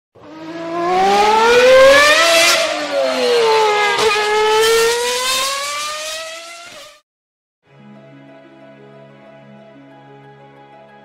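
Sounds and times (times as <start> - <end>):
car engine revving: 0.2 - 7.0.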